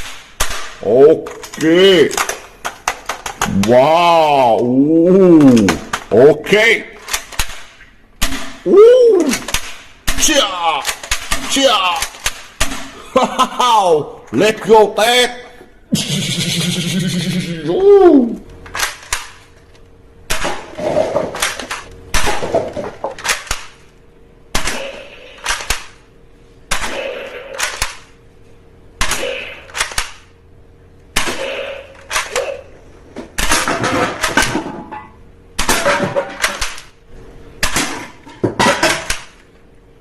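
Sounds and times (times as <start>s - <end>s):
toy guns firing: 0.0s - 3.8s, 7.0s - 12.9s, 18.7s - 19.5s, 20.3s - 23.9s, 24.5s - 26.0s, 26.7s - 28.2s, 29.0s - 30.3s, 31.2s - 32.7s, 33.4s - 34.7s, 35.6s - 37.0s, 37.6s - 38.0s.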